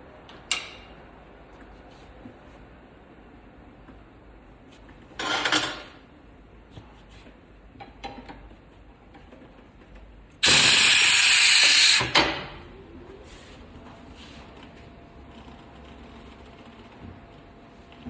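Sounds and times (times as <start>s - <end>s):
compressed air hissing: 10.4s - 12.1s.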